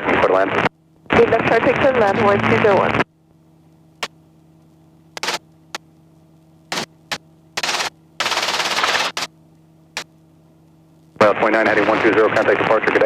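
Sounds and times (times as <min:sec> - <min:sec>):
faint electrical hum: 0:00.0 - 0:13.0
radio static bursts and clicks: 0:04.0 - 0:04.2, 0:05.1 - 0:05.9, 0:06.6 - 0:10.1, 0:11.0 - 0:13.0.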